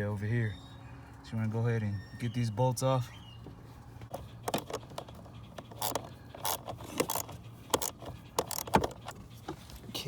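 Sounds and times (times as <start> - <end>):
socket wrench clicking on bolts: 5.6 - 9.0.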